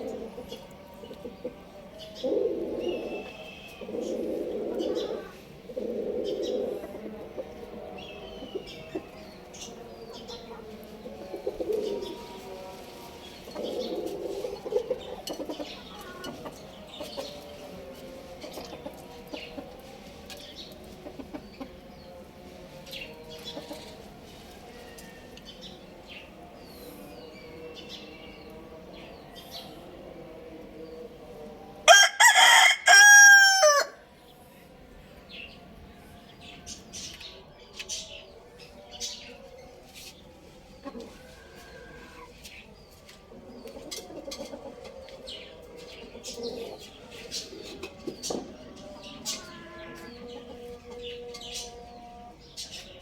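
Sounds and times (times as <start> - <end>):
birds chirping: 0.0 - 53.0
rooster crowing: 31.8 - 34.0.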